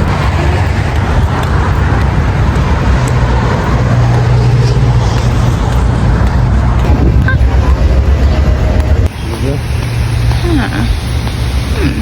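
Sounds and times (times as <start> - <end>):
vehicle low rumble: 0.0 - 12.0.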